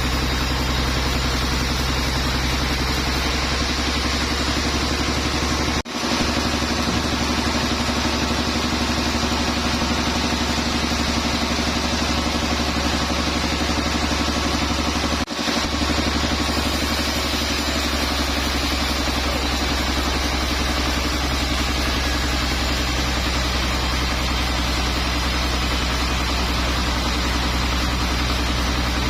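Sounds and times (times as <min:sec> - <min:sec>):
sawmill engine drone: 0:00.0 - 0:29.0.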